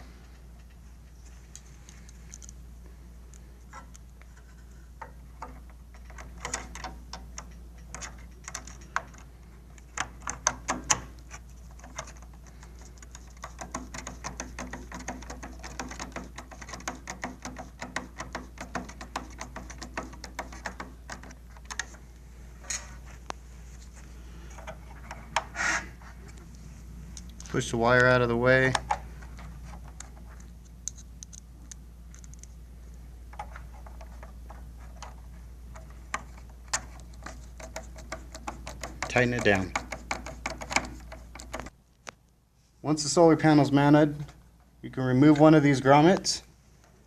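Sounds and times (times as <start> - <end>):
steady low hum: 0.0 - 47.0
clicks and taps on plastic and metal: 5.0 - 11.1, 11.7 - 22.0, 33.3 - 42.2.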